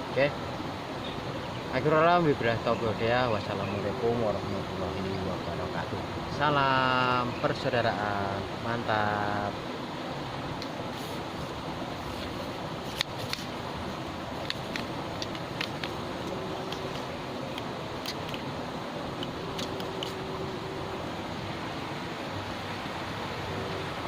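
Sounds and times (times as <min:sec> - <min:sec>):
outdoor background noise: 0:00.0 - 0:24.0
light sharp clicks: 0:14.4 - 0:18.5.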